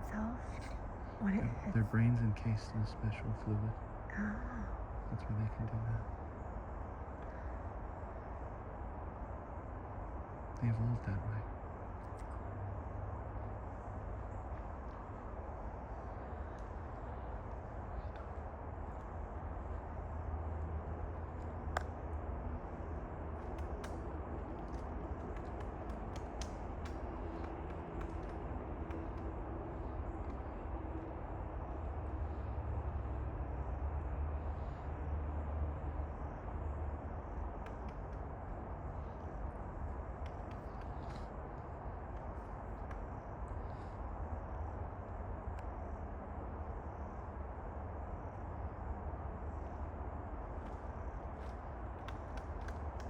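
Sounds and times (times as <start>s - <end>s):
low outdoor rumble: 0.0s - 53.0s
woodpecker pecking on tree: 14.3s - 32.2s, 36.9s - 44.6s, 49.6s - 53.0s.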